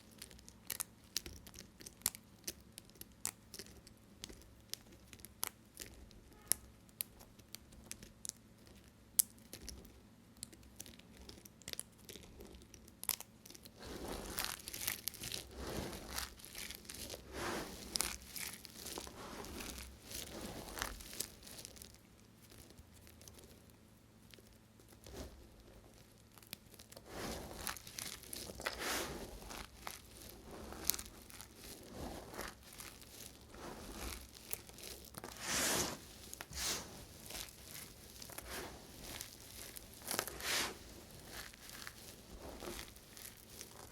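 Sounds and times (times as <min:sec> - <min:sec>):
knife cutting soap: 0:12.0 - 0:21.8, 0:26.9 - 0:43.9.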